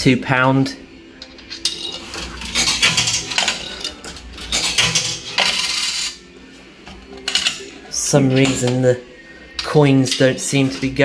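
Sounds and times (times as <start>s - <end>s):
coins clinking in machine: 1.2s - 6.3s, 7.2s - 8.9s.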